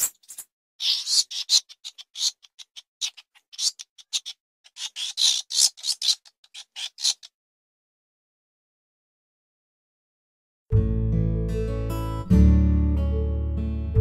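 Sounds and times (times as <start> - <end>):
rat squeaking: 0.2 - 7.4.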